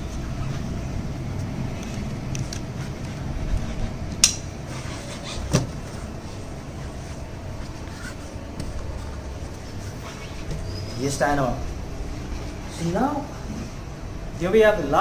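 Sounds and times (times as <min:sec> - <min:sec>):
steady low rumble: 0:00.0 - 0:04.7.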